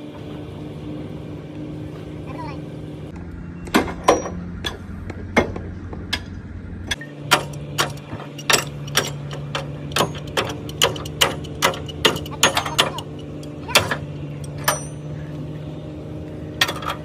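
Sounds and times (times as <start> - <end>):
steady machine hum: 0.0 - 17.0
deep rumble: 0.5 - 7.0.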